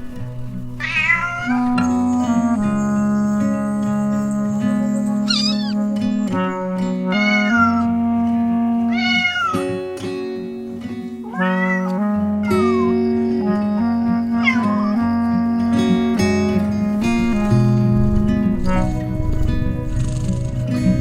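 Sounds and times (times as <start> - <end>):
music of held notes: 0.0 - 21.0
cat meowing: 0.8 - 2.3, 5.3 - 5.8, 7.1 - 8.0, 8.9 - 9.8, 11.2 - 13.1, 13.8 - 15.2.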